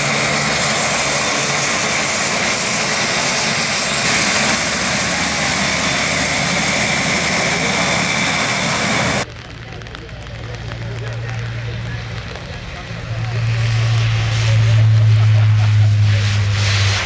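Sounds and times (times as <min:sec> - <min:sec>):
loud propeller drone: 0:00.0 - 0:09.3, 0:11.1 - 0:17.0
high turbine whine: 0:00.0 - 0:09.6, 0:10.3 - 0:17.0.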